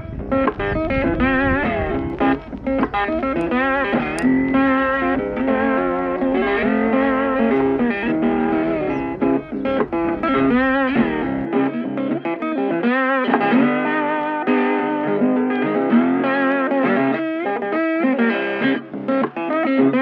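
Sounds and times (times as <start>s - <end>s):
electric guitar music: 0.0s - 20.0s.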